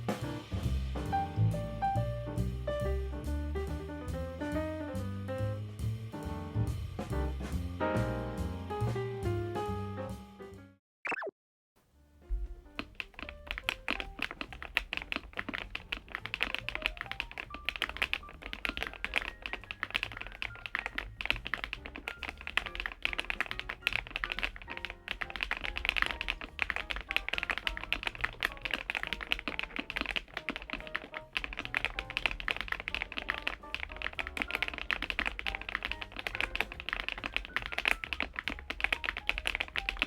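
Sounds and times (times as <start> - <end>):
fast typing on mechanical keyboard: 12.7 - 40.0.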